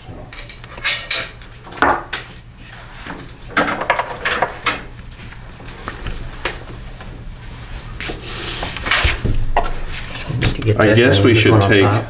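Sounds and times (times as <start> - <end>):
metal tools clinking: 0.2 - 2.3.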